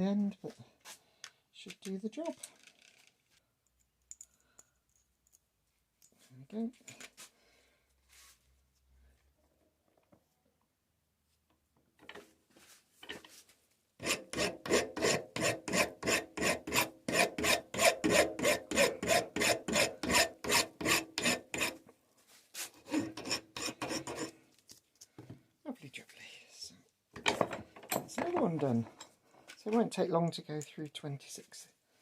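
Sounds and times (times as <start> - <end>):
hand file rasping on metal bolt: 14.0 - 21.8, 22.8 - 24.4.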